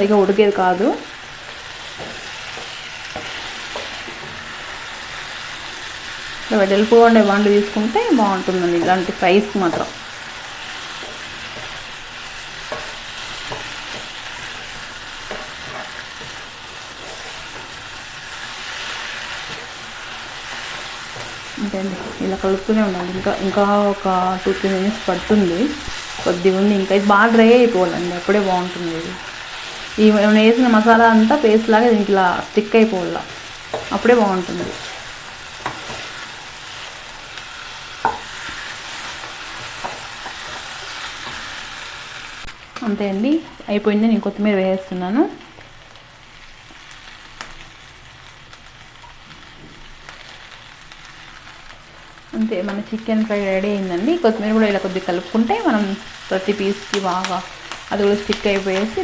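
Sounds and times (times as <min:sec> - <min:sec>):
chicken sizzling in a pan: 0:00.0 - 0:59.0
spoon scraping a pan: 0:08.3 - 0:32.0, 0:32.8 - 0:41.9.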